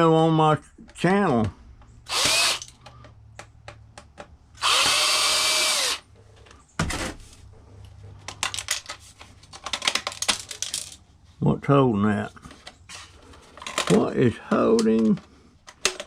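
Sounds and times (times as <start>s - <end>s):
power drill running: 2.1s - 2.8s, 4.6s - 6.0s
screws and plastic parts rattling: 2.1s - 3.2s, 8.2s - 11.0s, 12.5s - 16.0s.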